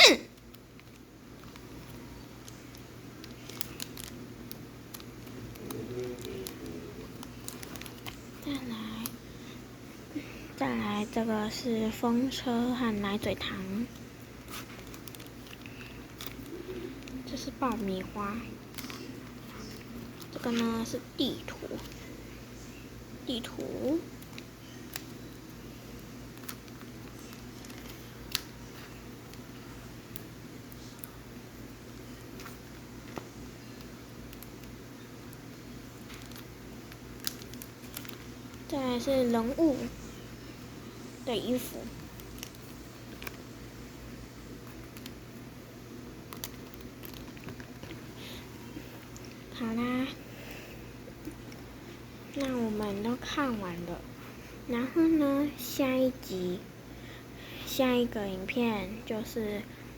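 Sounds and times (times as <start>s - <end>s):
soft low hum: 0.0s - 59.9s
cards clicking and rustling: 0.4s - 9.2s, 13.1s - 22.1s, 23.4s - 29.5s, 36.0s - 39.6s, 44.6s - 45.3s, 46.2s - 49.5s.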